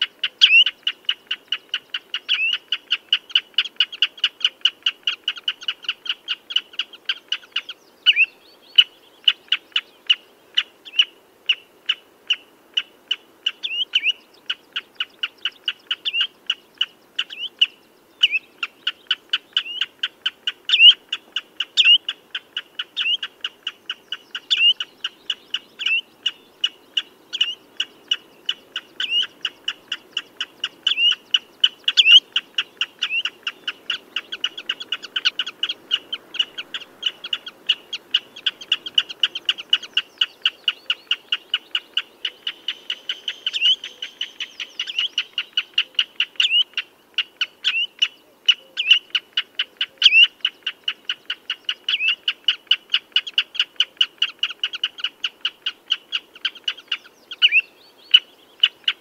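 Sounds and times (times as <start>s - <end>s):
bird piping calls: 0.0s - 59.0s.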